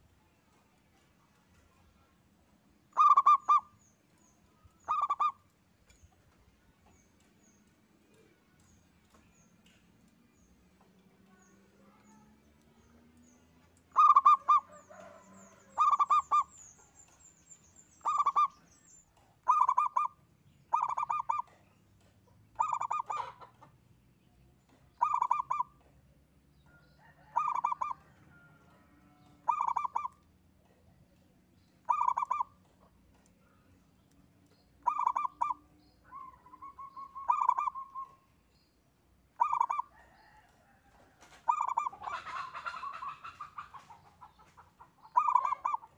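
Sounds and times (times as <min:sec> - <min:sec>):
dove cooing: 0:02.9 - 0:03.7, 0:04.8 - 0:05.4, 0:13.9 - 0:16.5, 0:18.0 - 0:18.5, 0:19.4 - 0:21.6, 0:22.6 - 0:23.4, 0:25.0 - 0:25.7, 0:27.2 - 0:28.1, 0:29.4 - 0:30.2, 0:31.9 - 0:32.6, 0:34.8 - 0:38.2, 0:39.4 - 0:40.4, 0:41.4 - 0:43.9, 0:45.0 - 0:45.9.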